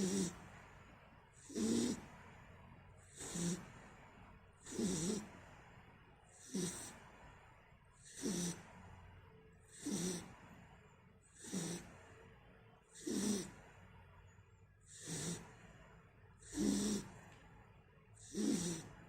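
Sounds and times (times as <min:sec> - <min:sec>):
person snoring: 0:00.0 - 0:00.5, 0:01.4 - 0:02.2, 0:03.0 - 0:03.9, 0:04.6 - 0:05.4, 0:06.4 - 0:07.0, 0:08.0 - 0:08.8, 0:09.7 - 0:10.5, 0:11.3 - 0:12.1, 0:13.0 - 0:13.7, 0:14.8 - 0:15.7, 0:16.4 - 0:17.3, 0:18.2 - 0:19.0
quiet breathing: 0:00.0 - 0:19.0.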